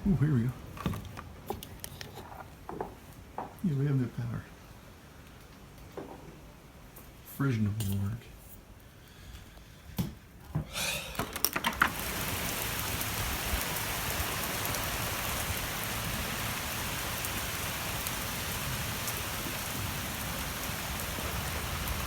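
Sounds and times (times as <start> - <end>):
heavy rain pouring: 10.8 - 22.0.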